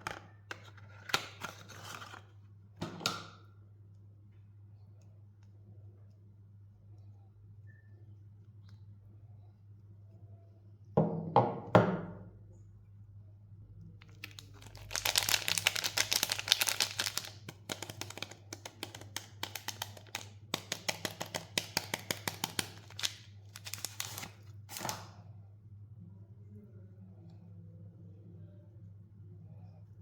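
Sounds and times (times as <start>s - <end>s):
packaging crackling and tearing: 14.0s - 25.1s.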